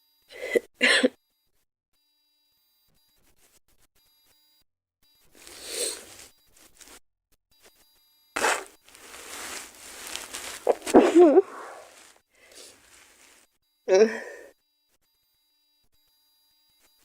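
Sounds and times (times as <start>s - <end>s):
girl sneezing: 8.4s - 8.7s, 10.6s - 11.9s.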